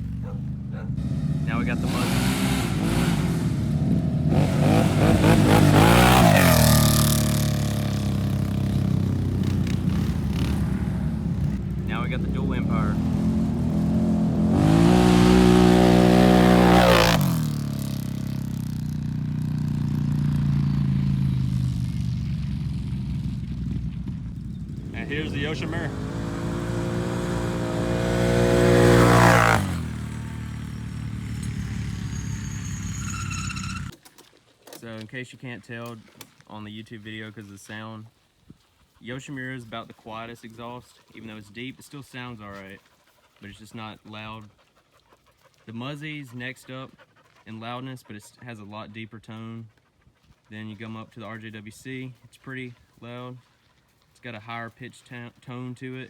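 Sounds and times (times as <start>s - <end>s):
atv engine idling and revving: 0.0s - 34.0s.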